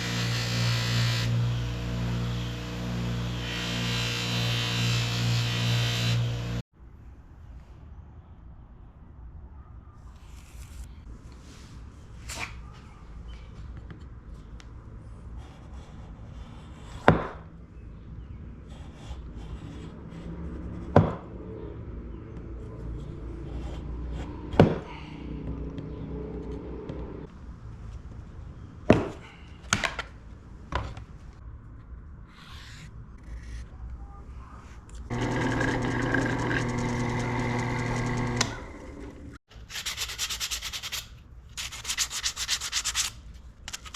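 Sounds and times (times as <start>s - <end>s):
power tool running: 0.0s - 6.6s, 35.1s - 39.4s.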